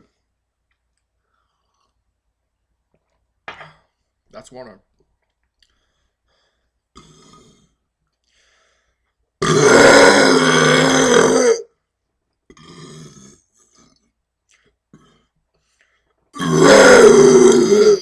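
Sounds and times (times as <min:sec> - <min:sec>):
man burping loudly: 0:06.9 - 0:07.7, 0:09.4 - 0:11.7, 0:12.5 - 0:13.9, 0:16.4 - 0:18.0.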